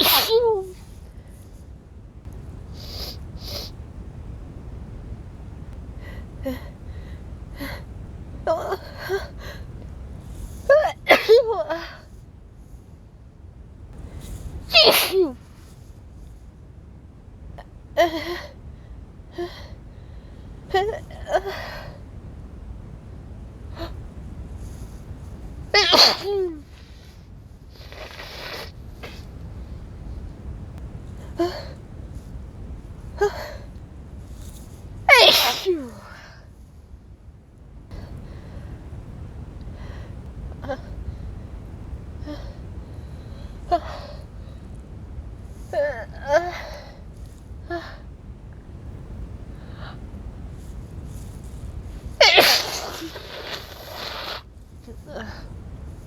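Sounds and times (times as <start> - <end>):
woman sneezing: 0.0 - 0.8, 10.7 - 11.6, 14.7 - 15.4, 25.8 - 26.6, 35.1 - 36.2, 52.2 - 54.4
long noisy breath: 5.9 - 8.0
woman sniffling: 52.2 - 55.6.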